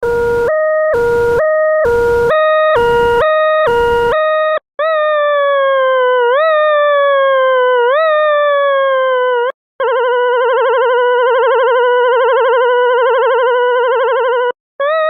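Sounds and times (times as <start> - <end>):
electronic two-tone siren: 0.0 - 4.6, 9.8 - 15.0.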